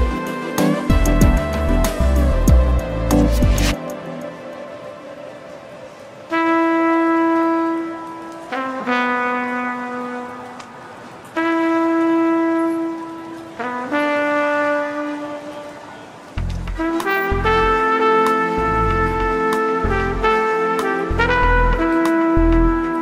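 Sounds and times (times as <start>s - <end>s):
brass instrument long notes: 0.0s - 23.0s.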